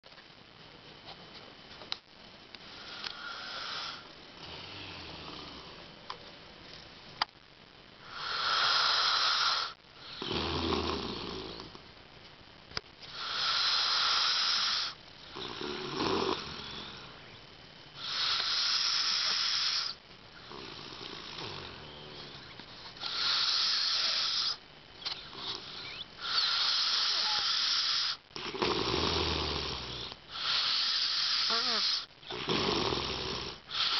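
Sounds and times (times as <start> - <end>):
man snoring loudly: 2.8 - 5.8, 8.1 - 11.7, 13.2 - 17.1, 18.0 - 22.4, 23.0 - 24.6, 25.3 - 33.9.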